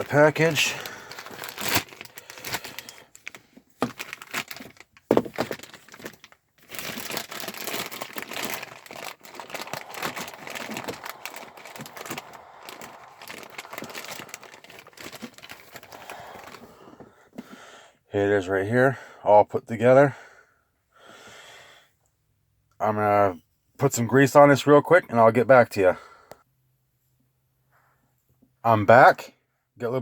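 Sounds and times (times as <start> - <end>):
packaging crinkling and rustling: 0.0 - 17.0
packaging crackling and clicking: 0.1 - 16.6.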